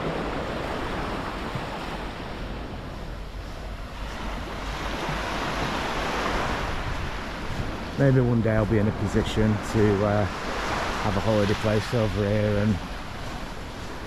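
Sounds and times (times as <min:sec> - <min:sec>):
sea waves breaking on beach: 0:00.0 - 0:14.0.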